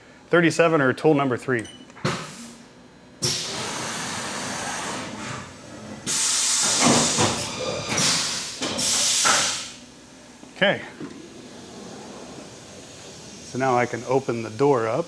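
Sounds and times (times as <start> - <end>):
loud air hiss: 3.2 - 5.2, 6.0 - 9.9, 11.2 - 15.0.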